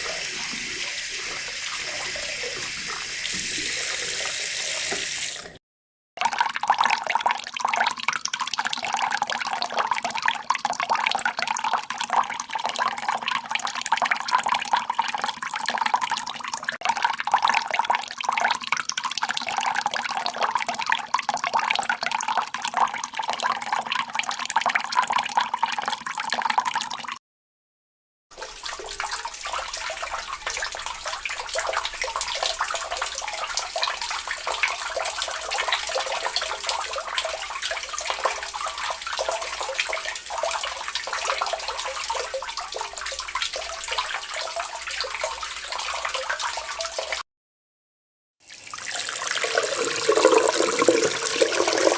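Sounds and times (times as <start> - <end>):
water running from a tap: 0.0 - 5.6, 28.4 - 47.2, 48.5 - 51.9.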